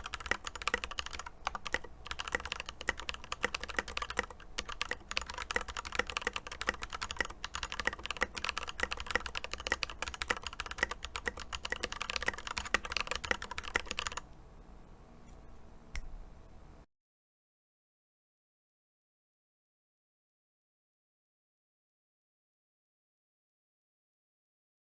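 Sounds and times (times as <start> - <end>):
fast typing on mechanical keyboard: 0.0 - 14.3.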